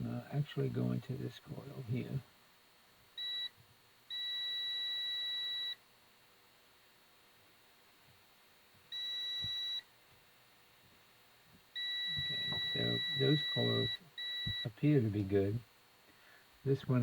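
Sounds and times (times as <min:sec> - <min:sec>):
continuity tester beeping: 0:03.2 - 0:05.8, 0:08.9 - 0:09.9, 0:11.8 - 0:15.3.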